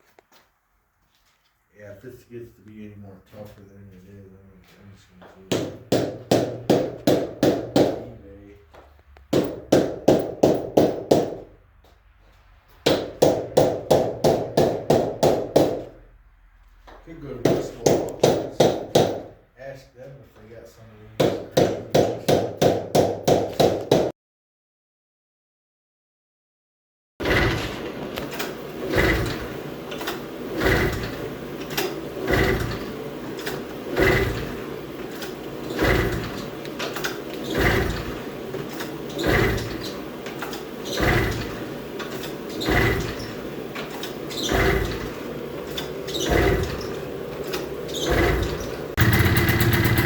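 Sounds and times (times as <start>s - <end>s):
hammer blows ringing: 5.4s - 8.2s, 17.3s - 19.3s
mechanical strokes: 27.2s - 50.0s.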